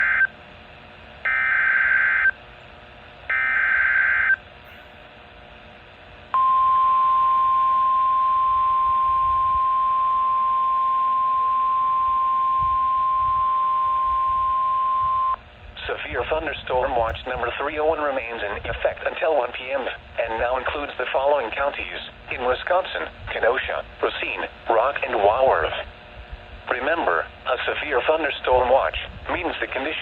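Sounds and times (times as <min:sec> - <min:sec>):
steady warning alarm tone: 0:00.0 - 0:00.4, 0:01.2 - 0:02.5, 0:03.2 - 0:05.3, 0:06.3 - 0:15.4
faint radio hiss: 0:15.7 - 0:26.0, 0:26.6 - 0:30.0.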